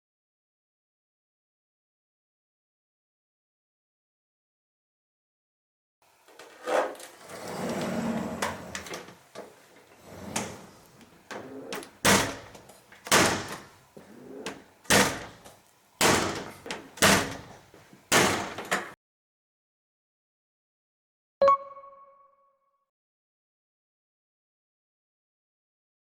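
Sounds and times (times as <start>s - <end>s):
folding door rubbing and scraping: 6.4s - 15.4s, 16.1s - 18.9s
folding door knocking: 12.1s - 12.5s, 16.0s - 17.5s.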